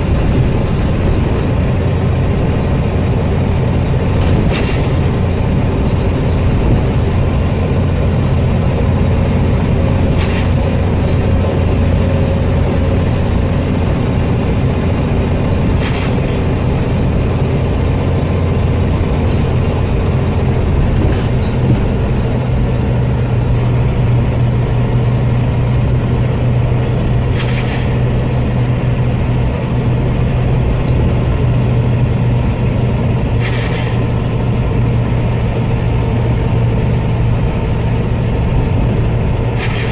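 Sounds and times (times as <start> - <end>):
bus engine and road drone: 0.0 - 39.9
sharp air hisses: 33.4 - 34.0, 39.6 - 39.9.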